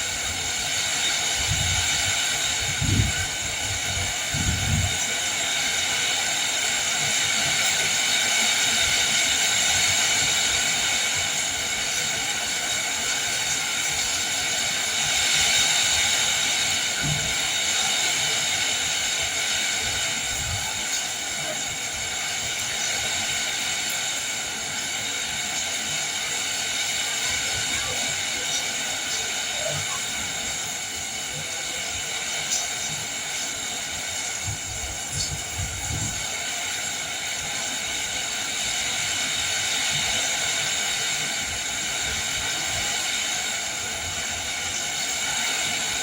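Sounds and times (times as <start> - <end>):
heavy rain: 0.0 - 46.0
wind: 0.0 - 46.0.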